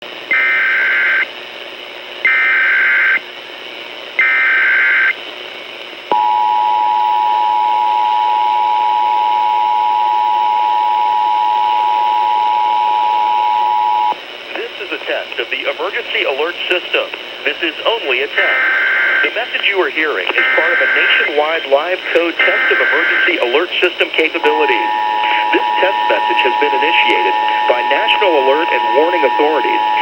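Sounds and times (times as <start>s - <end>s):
digital data bursts: 17.5s - 30.0s
two-tone attention signal: 20.4s - 21.2s, 22.4s - 23.6s, 24.4s - 30.0s.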